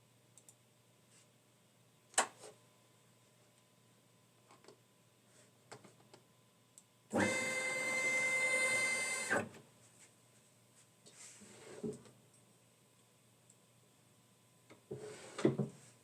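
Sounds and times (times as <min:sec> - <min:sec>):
stepper motor whine: 0:07.2 - 0:09.5.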